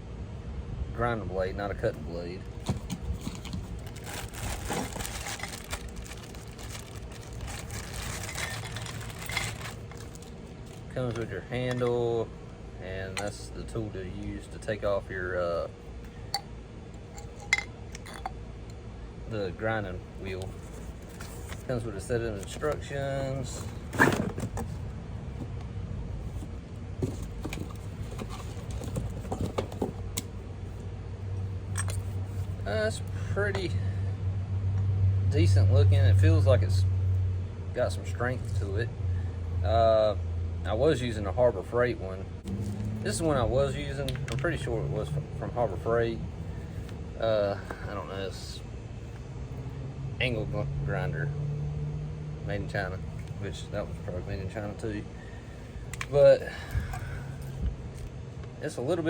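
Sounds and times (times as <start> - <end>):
low steady hum: 0.0 - 59.0
low rumble: 3.2 - 10.3.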